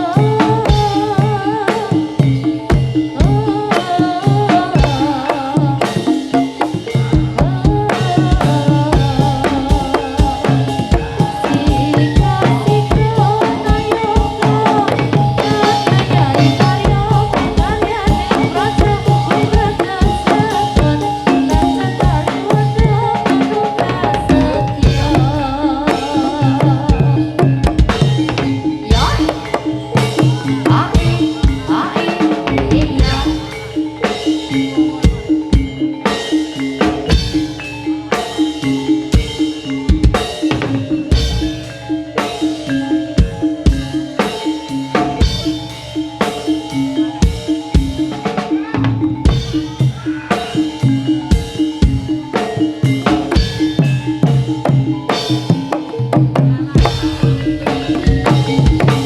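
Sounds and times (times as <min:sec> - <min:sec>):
hand drum beats: 0:00.0 - 0:59.0
live band music: 0:00.0 - 0:59.0
pitched melody line: 0:00.0 - 0:59.0.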